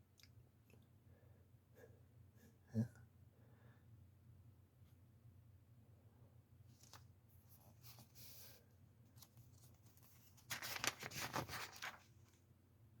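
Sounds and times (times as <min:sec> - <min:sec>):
paper pages rustling: 0:06.7 - 0:12.4.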